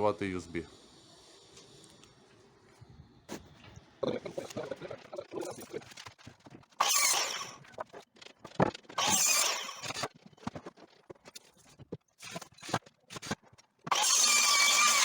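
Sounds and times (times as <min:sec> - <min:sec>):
drill driving screws into wood: 0:06.8 - 0:07.7, 0:09.0 - 0:10.1, 0:13.9 - 0:15.0.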